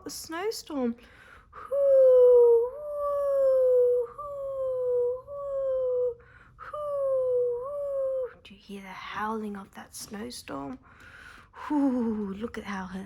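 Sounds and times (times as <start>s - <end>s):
woman imitating howling wind: 1.6s - 8.4s.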